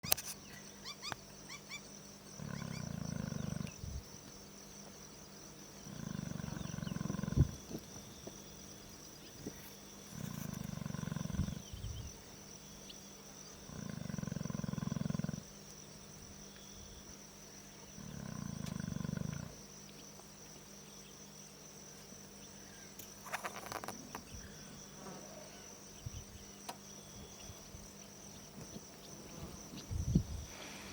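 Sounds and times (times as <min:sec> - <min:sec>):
high insect drone: 0:00.0 - 0:30.9
lion snoring: 0:02.3 - 0:04.0, 0:05.8 - 0:07.8, 0:10.0 - 0:11.8, 0:13.6 - 0:15.6, 0:17.9 - 0:19.6.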